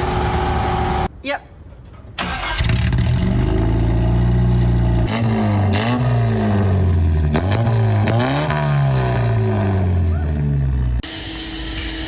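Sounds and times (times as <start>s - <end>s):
car engine idling and revving: 0.0s - 1.1s, 2.5s - 11.0s.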